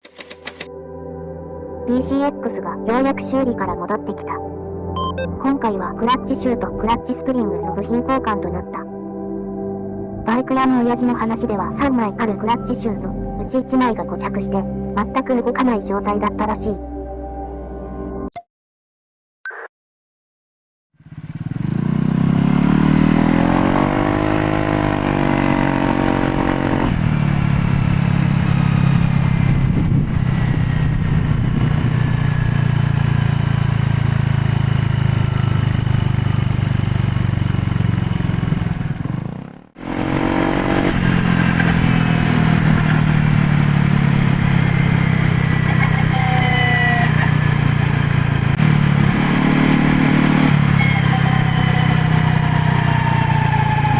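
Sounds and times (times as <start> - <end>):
scooter engine while riding: 0.0 - 0.7, 21.0 - 53.9
thin high falling whines: 40.0 - 53.9.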